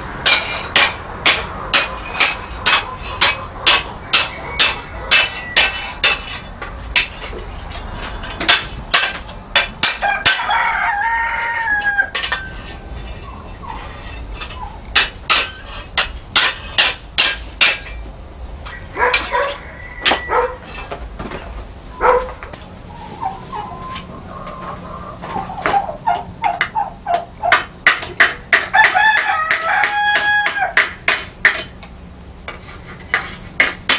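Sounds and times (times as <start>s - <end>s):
hammer striking steel on anvil: 0.2s - 7.3s, 8.4s - 10.6s, 14.4s - 18.0s, 26.5s - 31.8s
rooster crowing: 4.0s - 5.8s, 10.0s - 12.2s, 18.7s - 20.7s, 28.7s - 30.8s.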